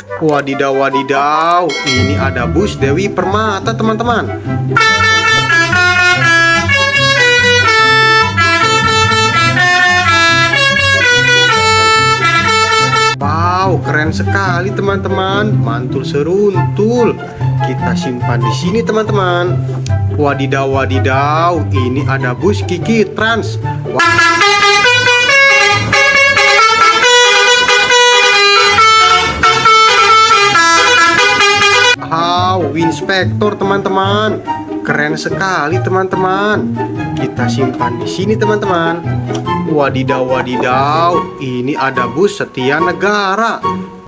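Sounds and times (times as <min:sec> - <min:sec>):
bright tune with bass beat: 0:00.0 - 0:42.2
multi-tone bus horn melody: 0:01.8 - 0:13.3, 0:23.9 - 0:32.1.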